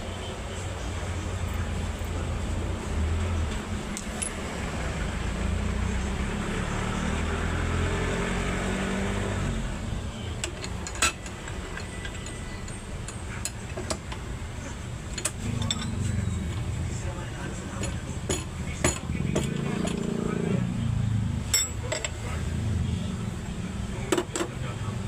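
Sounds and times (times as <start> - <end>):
vehicle engine running: 11.4 - 25.0.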